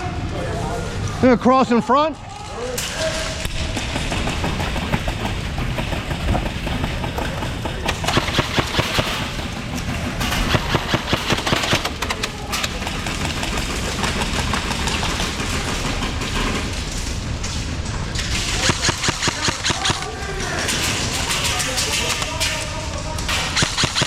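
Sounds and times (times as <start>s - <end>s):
airsoft guns firing: 7.9s - 9.5s, 10.2s - 15.9s, 18.3s - 22.6s, 23.3s - 24.0s.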